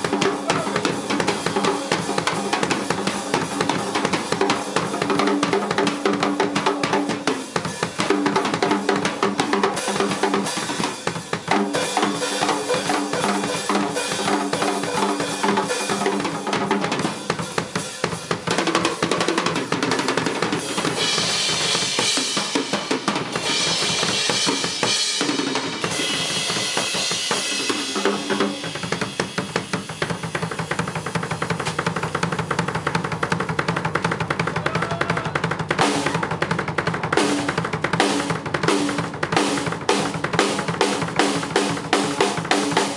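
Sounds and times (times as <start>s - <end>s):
rapid drum rolls: 0.0s - 42.9s
toms and bass drum: 0.0s - 42.9s
cymbals washing: 20.6s - 32.4s.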